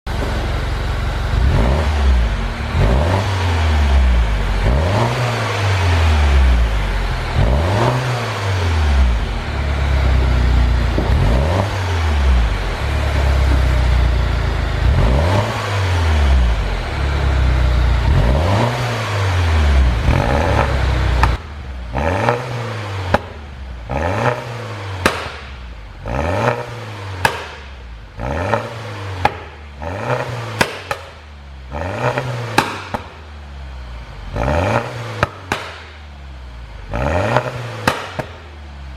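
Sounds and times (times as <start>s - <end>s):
car engine revving: 0.1s - 38.9s
exhaust pops and cracks: 10.1s - 11.7s, 21.0s - 21.5s, 25.0s - 25.6s, 27.2s - 27.8s, 30.6s - 31.2s, 32.5s - 33.2s, 35.2s - 36.0s, 37.3s - 38.4s.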